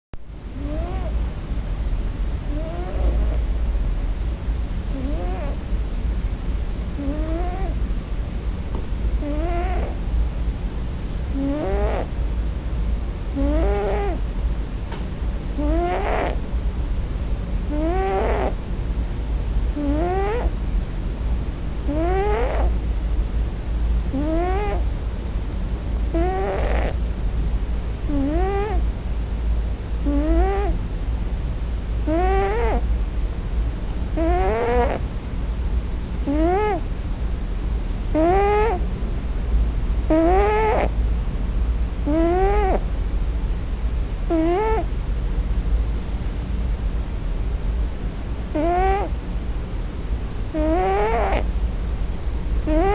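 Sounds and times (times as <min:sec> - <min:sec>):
cat crying: 0:00.6 - 0:01.2, 0:02.4 - 0:03.4, 0:04.9 - 0:05.6, 0:07.0 - 0:07.8, 0:09.2 - 0:10.0, 0:11.4 - 0:12.2, 0:13.4 - 0:14.2, 0:15.6 - 0:16.4, 0:17.7 - 0:18.6, 0:19.8 - 0:20.6, 0:21.9 - 0:22.8, 0:24.2 - 0:24.9, 0:26.1 - 0:27.0, 0:28.1 - 0:28.8, 0:30.1 - 0:30.8, 0:32.1 - 0:32.8, 0:34.2 - 0:35.0, 0:36.3 - 0:36.8, 0:38.1 - 0:38.8, 0:40.1 - 0:40.9, 0:42.1 - 0:42.8, 0:44.3 - 0:44.9, 0:48.5 - 0:49.2, 0:50.5 - 0:51.5, 0:52.7 - 0:52.9.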